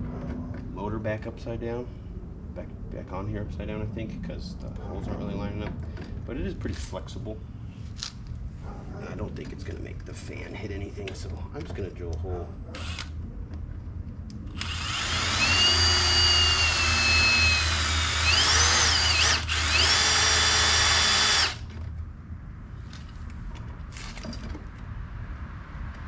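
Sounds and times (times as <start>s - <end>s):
power drill whining: 12.8s - 13.1s, 14.5s - 21.7s.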